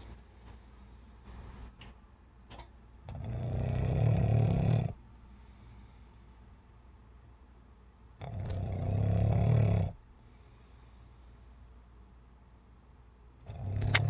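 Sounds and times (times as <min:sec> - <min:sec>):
quiet breathing: 0:00.0 - 0:02.2, 0:03.1 - 0:12.4
person snoring: 0:03.1 - 0:05.0, 0:08.2 - 0:10.0, 0:13.5 - 0:14.0.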